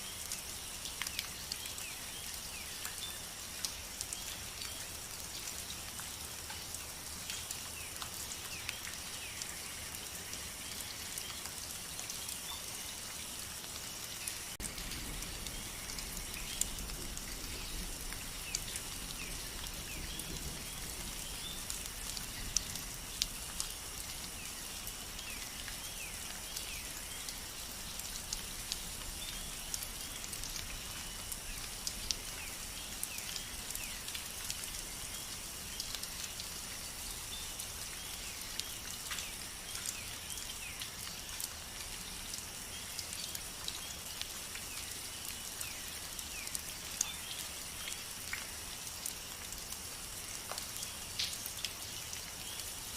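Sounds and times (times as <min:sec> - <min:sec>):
rain falling: 0:00.0 - 0:52.9
raindrops ticking on a surface: 0:00.0 - 0:52.9.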